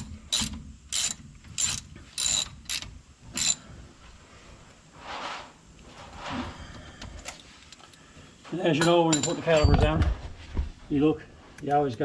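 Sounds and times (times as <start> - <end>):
ratchet wrench ratcheting: 0.0 - 3.6
soft rustle: 4.0 - 7.8.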